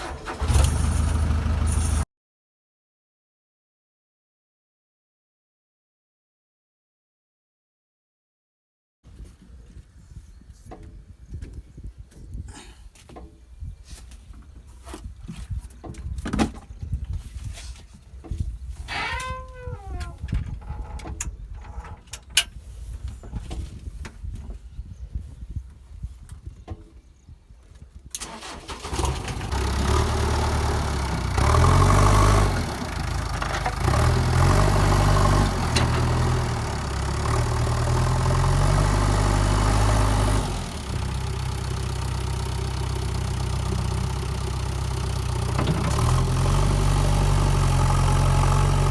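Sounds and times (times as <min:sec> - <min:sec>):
diesel engine revving and idling: 0:00.0 - 0:02.0, 0:28.4 - 0:48.9.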